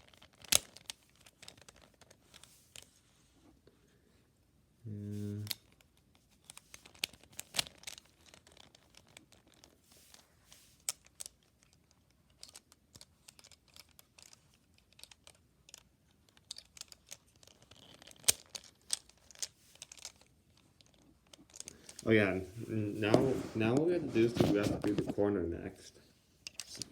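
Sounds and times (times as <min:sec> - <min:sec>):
small plastic clicks: 0:00.0 - 0:02.9, 0:10.8 - 0:22.0.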